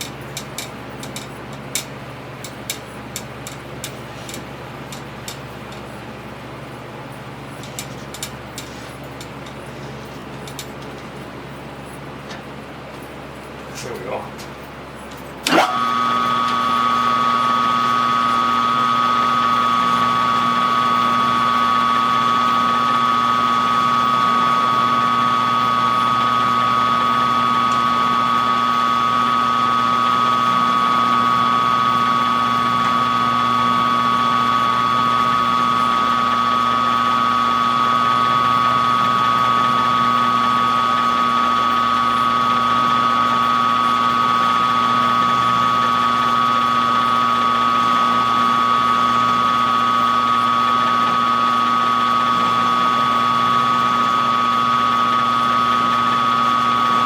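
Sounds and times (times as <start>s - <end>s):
machine tool motor whining: 13.0s - 57.0s.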